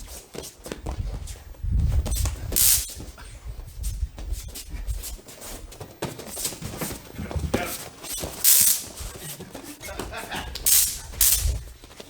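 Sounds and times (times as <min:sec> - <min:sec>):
knocks and rustles on a mat: 0:00.0 - 0:12.0.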